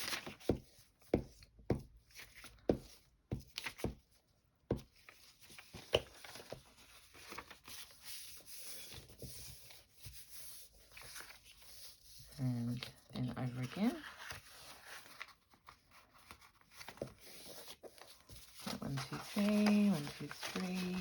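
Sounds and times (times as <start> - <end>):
paper rustling and rubbing: 5.0 - 21.0.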